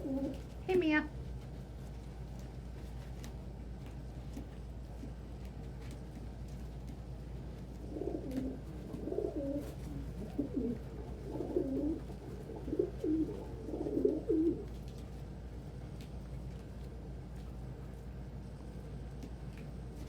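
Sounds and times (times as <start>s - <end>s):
pigeon cooing: 0.0s - 0.6s, 7.7s - 14.8s.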